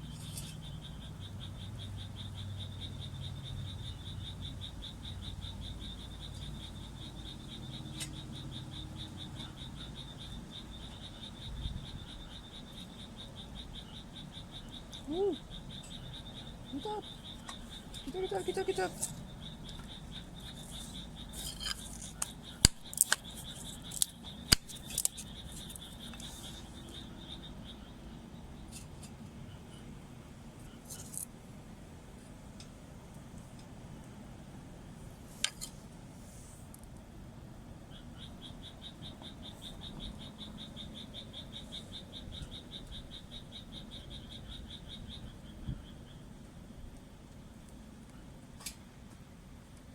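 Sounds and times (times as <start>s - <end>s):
frog calling: 0.0s - 30.0s, 37.8s - 46.7s
sharp pops and snaps: 21.4s - 26.3s.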